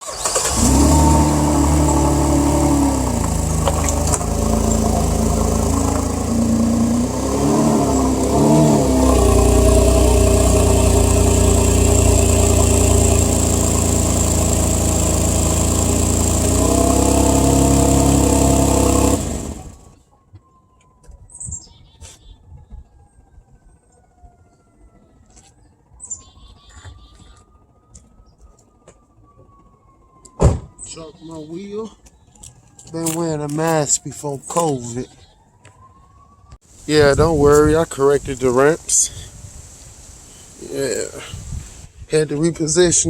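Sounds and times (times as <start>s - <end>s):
car engine running: 0.3s - 20.0s.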